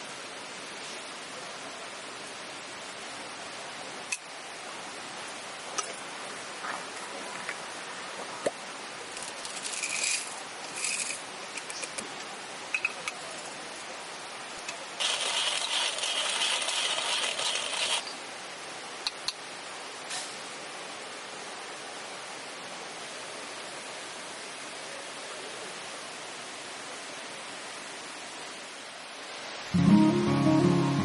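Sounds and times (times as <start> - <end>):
small metal objects clinking: 9.1 - 12.0.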